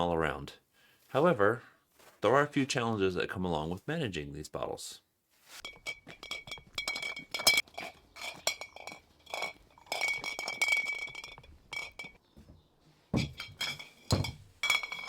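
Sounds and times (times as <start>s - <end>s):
glass bottles clinking: 5.6s - 12.2s, 13.2s - 15.0s.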